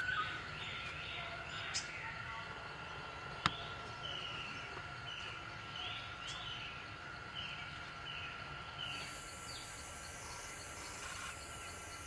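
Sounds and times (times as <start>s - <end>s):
forest background hum: 0.0s - 12.0s.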